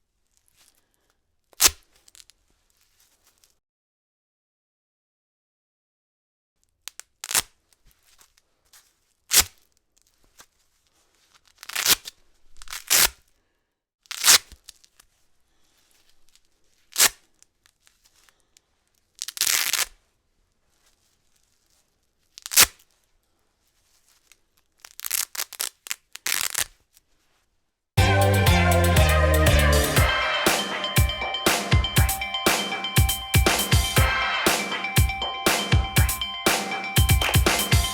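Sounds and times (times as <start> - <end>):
velcro ripping apart: 1.4 - 3.6, 6.6 - 13.3, 14.0 - 15.1, 15.9 - 20.1, 20.7 - 23.1, 23.7 - 27.3.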